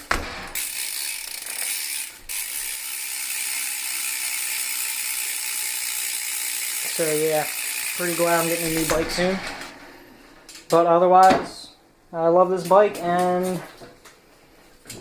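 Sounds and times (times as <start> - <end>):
bike hub ratcheting clicks: 0.6 - 9.0.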